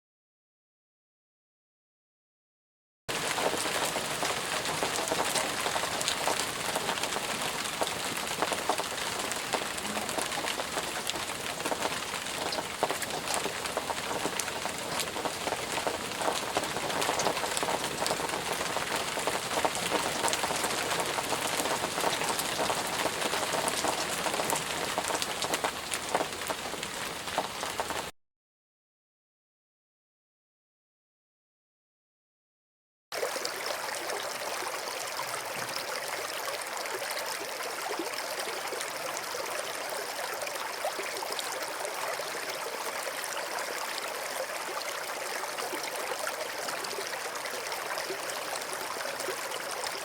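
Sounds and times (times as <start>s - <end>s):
steady rain falling: 3.1s - 28.1s, 33.2s - 50.0s.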